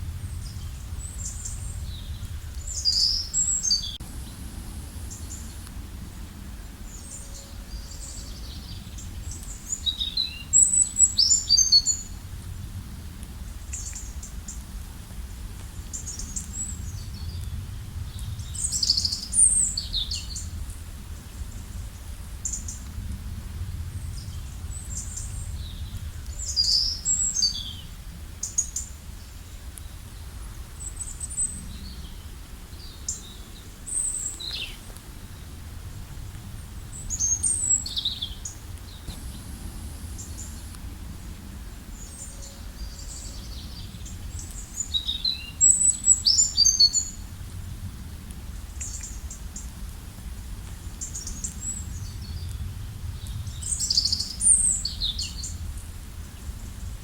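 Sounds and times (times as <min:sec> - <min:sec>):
low rumble: 0:00.0 - 0:09.7, 0:34.2 - 0:44.4
songbirds chirping and trilling: 0:00.0 - 0:12.2, 0:23.7 - 0:47.2.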